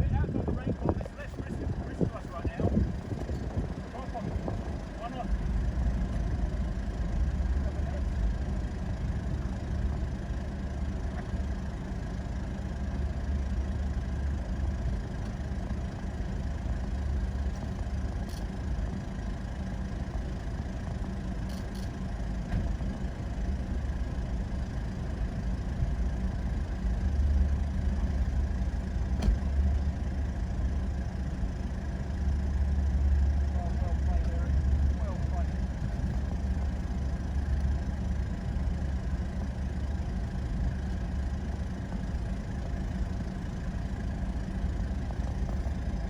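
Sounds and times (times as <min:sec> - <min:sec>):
vehicle engine rumbling: 0:00.0 - 0:46.0.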